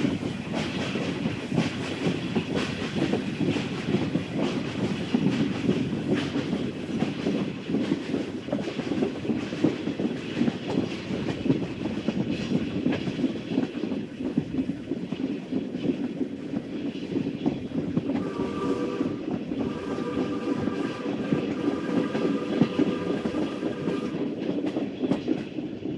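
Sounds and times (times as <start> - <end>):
steam train rhythmic clatter: 0.0 - 25.9
steam train whistle: 18.2 - 24.2.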